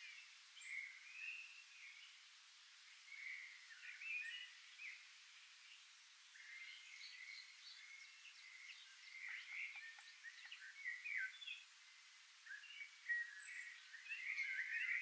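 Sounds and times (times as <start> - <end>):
soft outdoor hiss: 0.0 - 15.0
birds chirping and singing: 6.4 - 11.7, 12.4 - 15.0.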